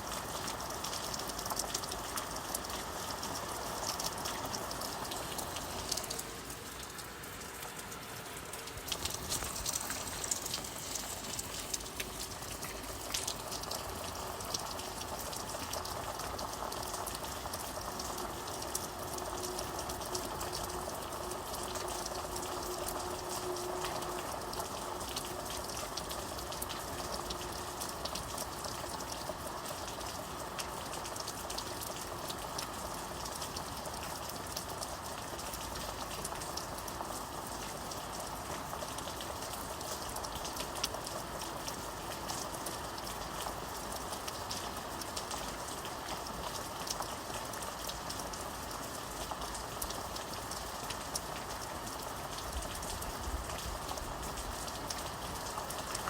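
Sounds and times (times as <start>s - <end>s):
rain hissing: 0.0s - 31.2s
raindrops ticking on a surface: 0.0s - 56.0s.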